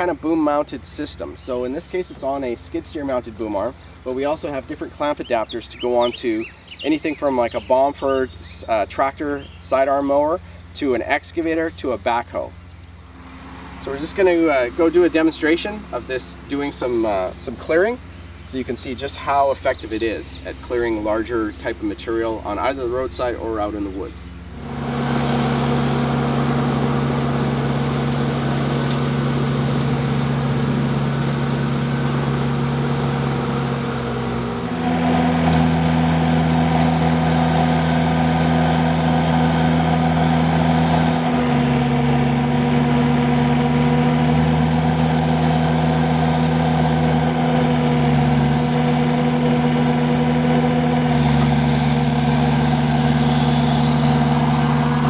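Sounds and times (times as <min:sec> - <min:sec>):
machine engine and hydraulic hum: 0:24.3 - 0:55.0.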